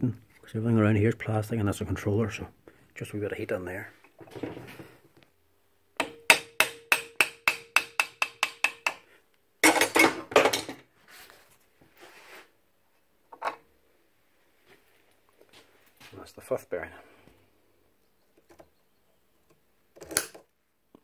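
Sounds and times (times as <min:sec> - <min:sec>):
hammer tapping metal: 0:06.0 - 0:09.0.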